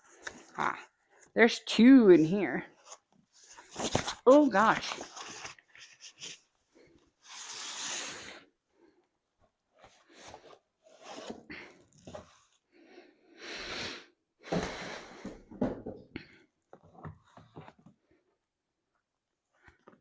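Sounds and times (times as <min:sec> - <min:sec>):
packaging rustling and sliding: 0:02.8 - 0:06.5.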